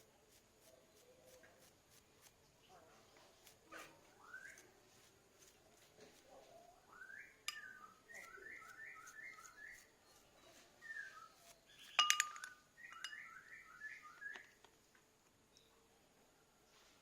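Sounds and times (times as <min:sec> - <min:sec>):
small bird chirping: 0:00.0 - 0:14.7
sharp metallic clink: 0:11.9 - 0:13.3.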